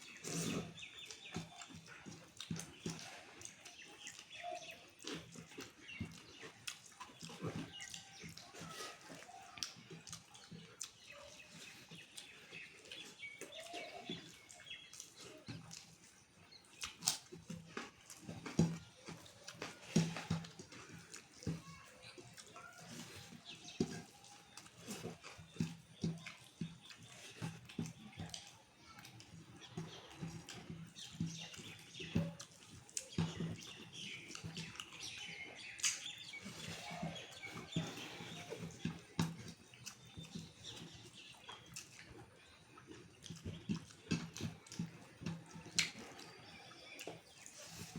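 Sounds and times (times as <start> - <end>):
small birds chirping: 0.0 - 47.9
chewing mouth smacks: 0.2 - 8.4, 9.6 - 18.6, 30.2 - 36.8, 37.4 - 46.3.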